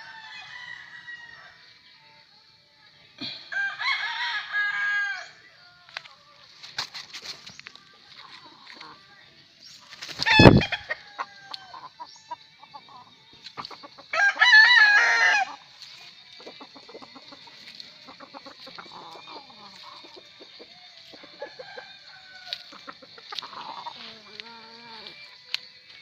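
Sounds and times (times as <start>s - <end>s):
rooster crowing: 0.0s - 1.6s, 3.5s - 5.4s, 10.2s - 11.9s, 14.1s - 15.6s, 21.2s - 25.2s
hens clucking: 5.9s - 9.1s, 9.8s - 25.7s.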